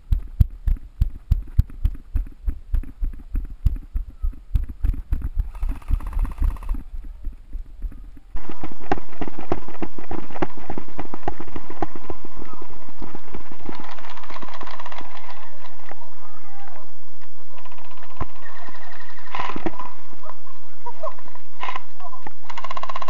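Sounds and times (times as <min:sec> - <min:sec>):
running footsteps thudding: 0:00.0 - 0:05.5
rapid airsoft gun fire: 0:22.4 - 0:23.0.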